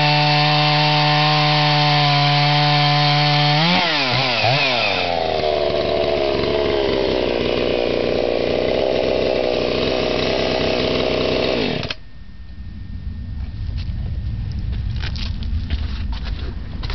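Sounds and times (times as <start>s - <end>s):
chainsaw cutting wood: 0.0s - 12.0s.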